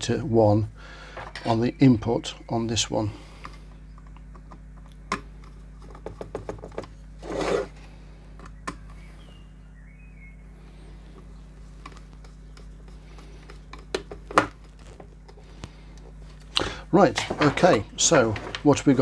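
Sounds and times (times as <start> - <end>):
steady low hum: 0.0 - 19.0
small clicks handling wire: 3.4 - 9.1, 11.2 - 18.7.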